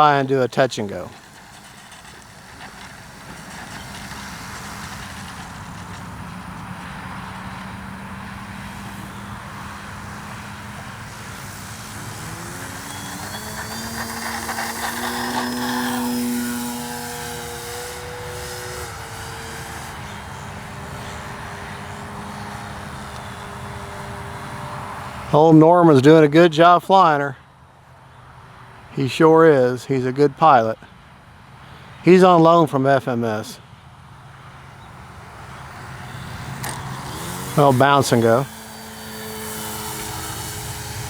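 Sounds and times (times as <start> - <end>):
model plane motor whining: 0.8 - 25.3, 34.2 - 41.0.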